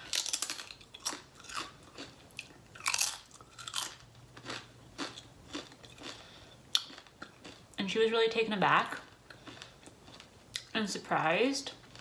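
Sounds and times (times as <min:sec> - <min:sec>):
chewing crunches: 0:00.0 - 0:07.8, 0:08.9 - 0:10.7.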